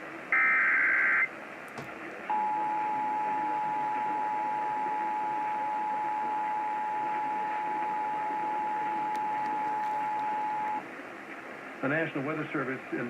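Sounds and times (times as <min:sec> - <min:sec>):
radio background hiss: 0:00.0 - 0:13.0.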